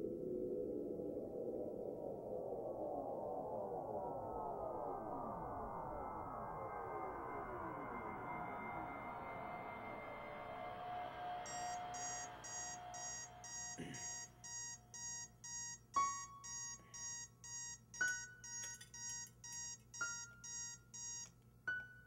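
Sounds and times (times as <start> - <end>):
ambient music: 6.7 - 14.9
alarm clock beeping: 11.4 - 21.3.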